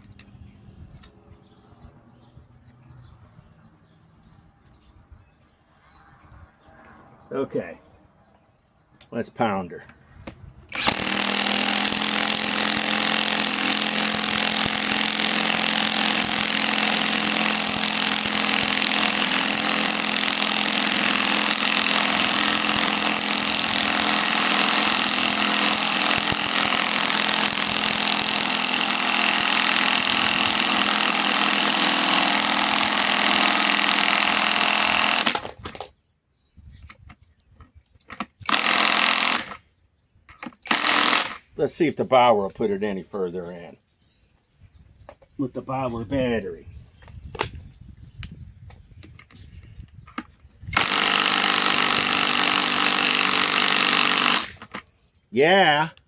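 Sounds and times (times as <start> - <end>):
impact wrench hammering: 10.7 - 35.4.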